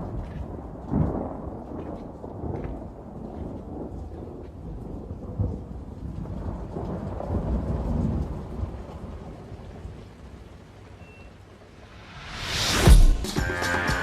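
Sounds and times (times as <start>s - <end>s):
low rumble of thunder: 0.0s - 10.8s.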